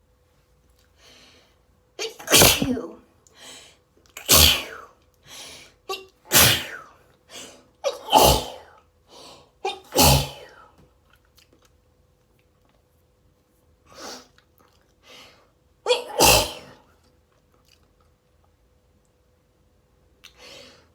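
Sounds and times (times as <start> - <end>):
person sneezing: 2.0 - 3.0, 4.2 - 4.9, 5.9 - 8.8, 9.6 - 10.7, 15.9 - 16.9.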